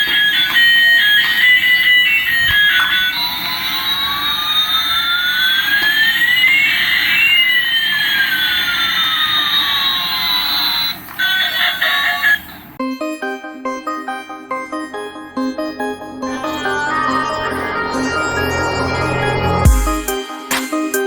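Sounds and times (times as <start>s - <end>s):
electronic tune: 12.8s - 20.6s
synthesized jet sound effect: 15.7s - 20.2s.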